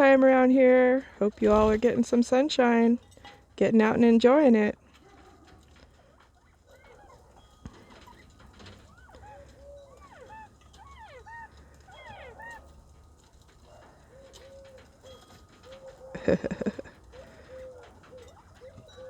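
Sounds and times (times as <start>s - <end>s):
quail chicks whistling calls: 6.2s - 13.0s, 13.6s - 16.2s, 17.0s - 19.0s.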